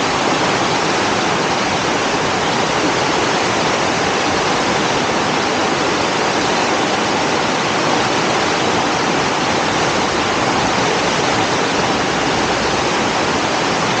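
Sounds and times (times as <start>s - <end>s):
river water rushing loudly: 0.0s - 14.0s.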